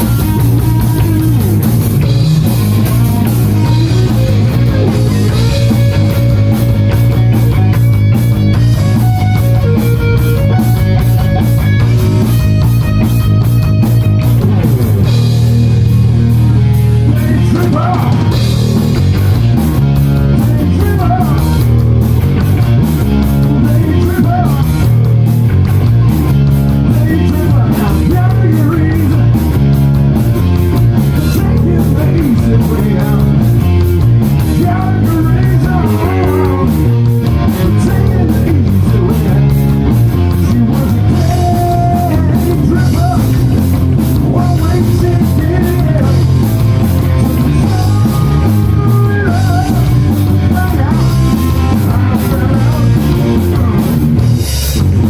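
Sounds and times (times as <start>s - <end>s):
person singing: 0.0s - 1.4s, 16.8s - 18.5s, 20.2s - 21.8s, 23.4s - 25.0s, 26.8s - 29.6s, 31.0s - 33.8s, 34.4s - 54.3s
drum kit beat: 0.0s - 55.0s
electric guitars: 0.0s - 55.0s.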